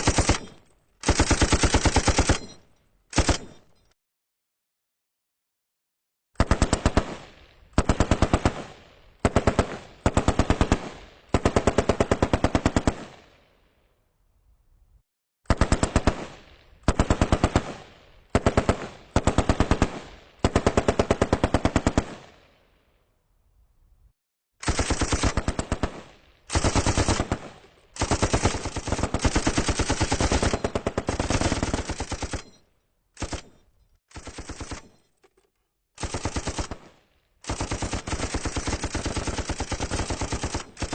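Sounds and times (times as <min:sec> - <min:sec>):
machine gun automatic fire: 0:00.0 - 0:03.7, 0:24.6 - 0:35.2, 0:36.0 - 0:40.9.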